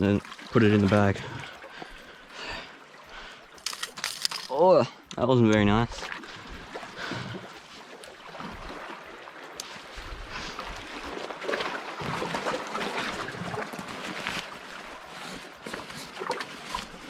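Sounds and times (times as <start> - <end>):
sea water washing on shore: 6.0 - 17.0.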